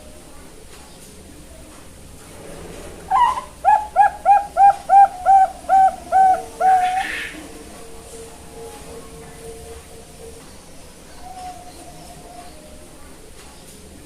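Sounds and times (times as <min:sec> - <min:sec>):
dove cooing: 0:03.0 - 0:13.2.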